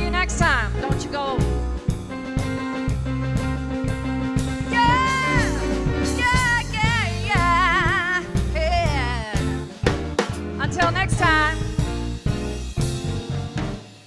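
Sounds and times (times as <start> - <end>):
bass: 0.0 - 14.0
drums: 0.0 - 14.0
woman singing with vibrato: 4.7 - 9.4.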